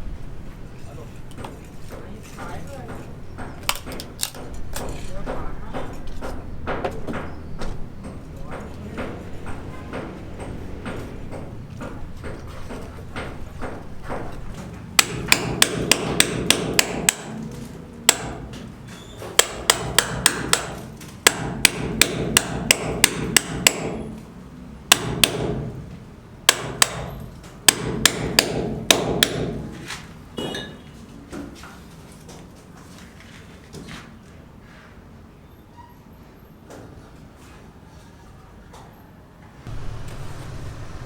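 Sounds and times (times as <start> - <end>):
hand hammer striking: 1.3 - 24.3, 24.9 - 25.9, 26.5 - 30.8.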